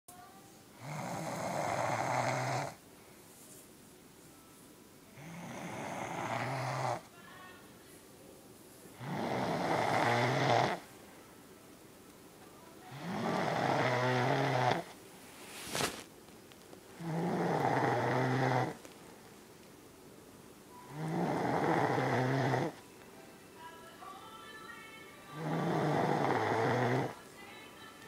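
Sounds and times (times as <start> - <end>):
woman snoring: 0.7 - 2.8, 5.1 - 7.1, 9.0 - 10.9, 12.9 - 15.0, 16.9 - 18.8, 20.9 - 22.8, 25.3 - 27.2.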